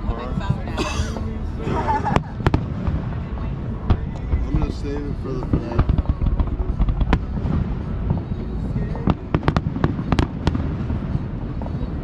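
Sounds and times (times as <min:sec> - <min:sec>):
fireworks booming: 0:00.0 - 0:12.0
firework cracks: 0:02.1 - 0:12.0.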